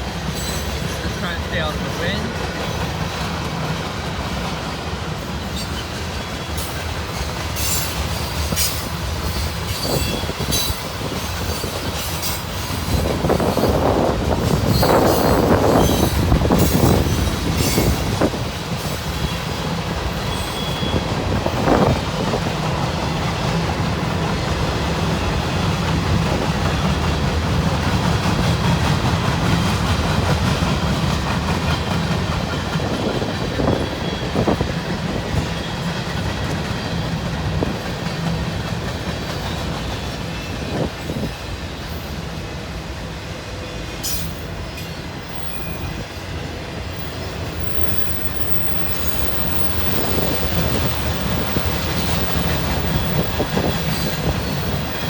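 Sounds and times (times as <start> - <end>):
wheels clacking over rail joints: 0.0 - 42.0
train wheels rumbling on rail: 0.0 - 55.0.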